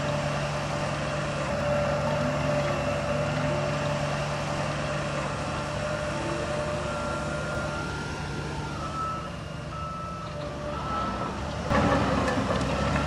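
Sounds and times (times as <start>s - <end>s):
diesel engine running: 0.0s - 13.0s
reversing alarm beeping: 1.6s - 11.5s.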